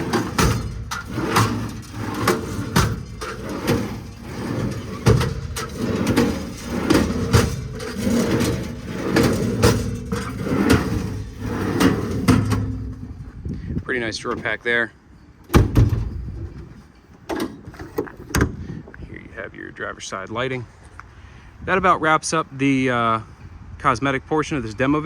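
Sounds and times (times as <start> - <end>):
metal drawers clunking and rattling: 0.0 - 13.4, 15.4 - 18.6.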